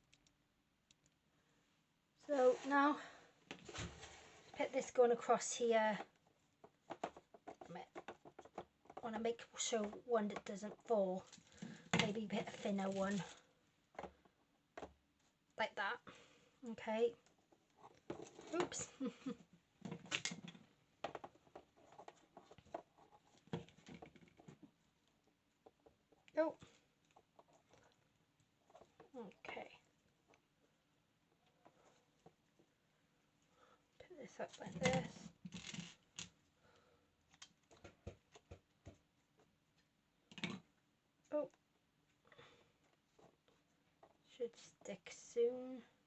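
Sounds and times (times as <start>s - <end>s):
twigs and carton handling noises: 12.2s - 13.4s.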